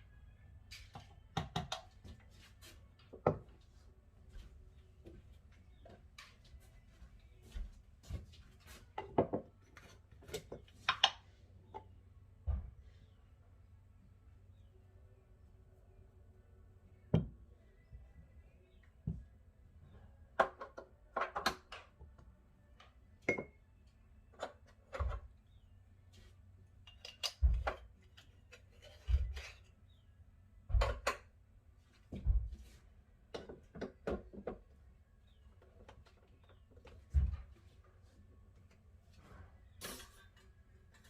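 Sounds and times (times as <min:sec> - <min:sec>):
kitchen items knocking and clinking: 0:30.7 - 0:31.3.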